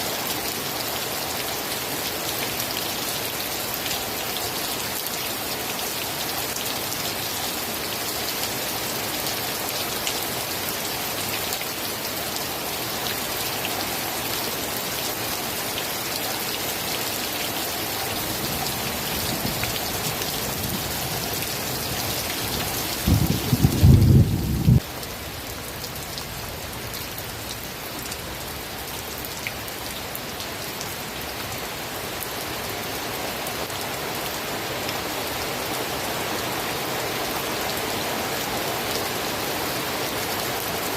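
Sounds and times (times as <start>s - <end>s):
steady rain falling: 0.0s - 40.9s
thunder rumble: 22.9s - 24.9s.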